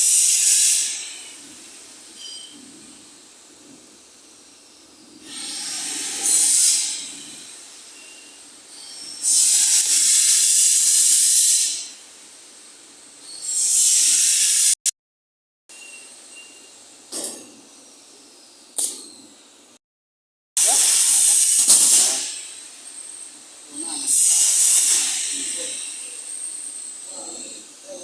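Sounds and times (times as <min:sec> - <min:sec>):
loud hissing bursts: 0:00.0 - 0:02.2, 0:02.9 - 0:12.8, 0:13.4 - 0:14.8, 0:20.6 - 0:28.0.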